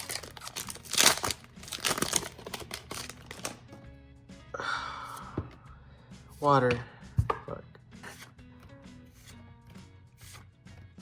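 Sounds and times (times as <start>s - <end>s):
foil pack crinkling: 0.0s - 3.6s
background music with held notes: 0.0s - 11.0s.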